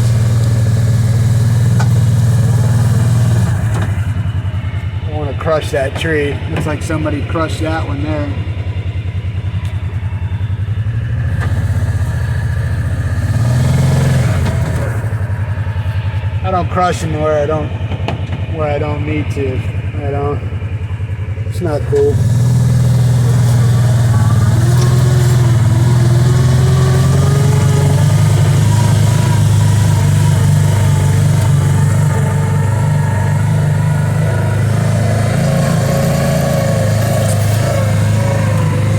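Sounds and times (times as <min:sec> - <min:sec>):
engine chugging: 0:00.0 - 0:38.9.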